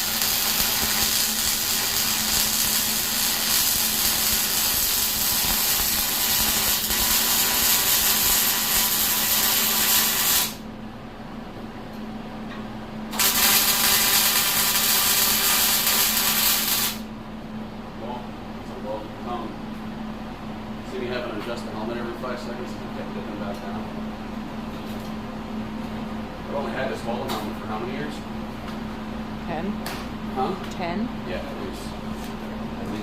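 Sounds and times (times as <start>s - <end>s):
arc welding crackle: 0.0s - 10.6s, 13.1s - 17.1s.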